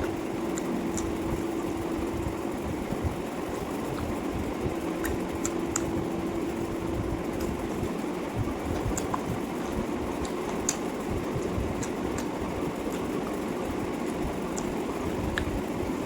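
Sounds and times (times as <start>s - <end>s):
chewing smacks and clicks: 0.0s - 1.2s, 5.0s - 5.9s, 8.7s - 13.4s, 14.0s - 15.6s
low background rumble: 0.0s - 16.0s.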